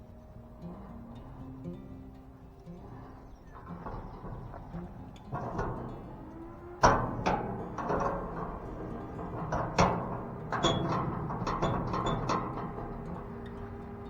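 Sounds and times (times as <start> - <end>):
metal lock parts clanking: 2.8 - 14.0.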